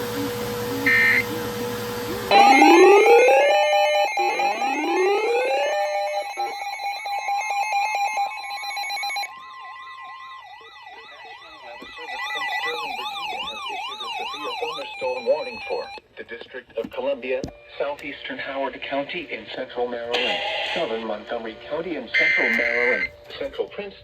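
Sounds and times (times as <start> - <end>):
electronic siren wailing: 0.0 - 16.0, 22.1 - 23.1
pulsing steady tone: 0.0 - 16.0.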